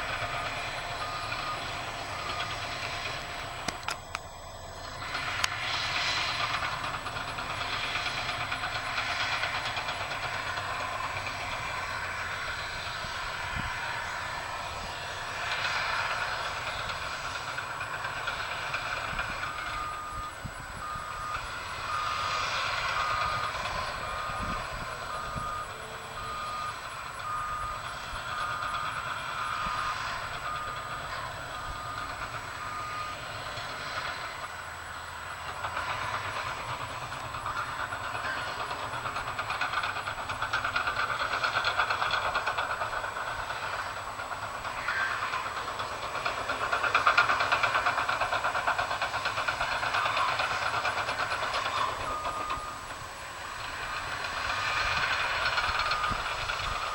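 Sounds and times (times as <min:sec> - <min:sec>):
heavy machinery working: 0:00.0 - 0:56.9
backup alarm beeping: 0:19.2 - 0:33.3, 0:49.6 - 0:53.0.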